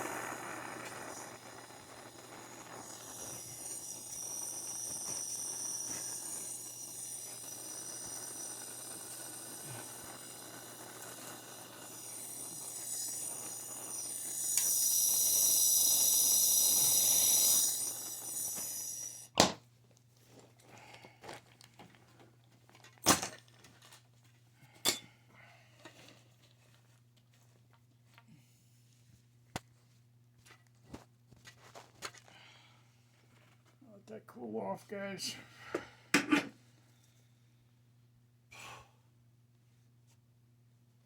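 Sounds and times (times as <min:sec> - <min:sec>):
torch flame hissing: 0:00.0 - 0:19.4.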